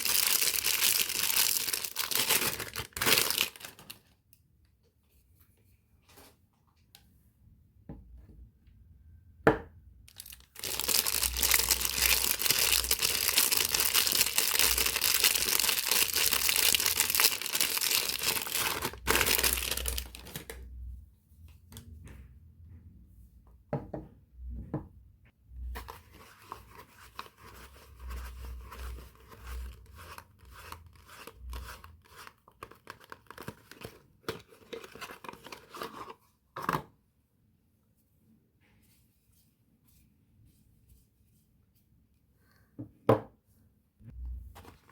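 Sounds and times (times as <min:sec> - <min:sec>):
packaging tearing and rustling: 0:00.0 - 0:04.0, 0:10.1 - 0:20.5.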